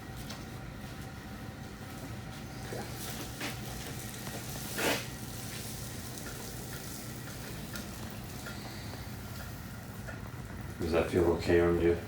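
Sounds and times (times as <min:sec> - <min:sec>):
room noise hiss: 0:00.0 - 0:12.0.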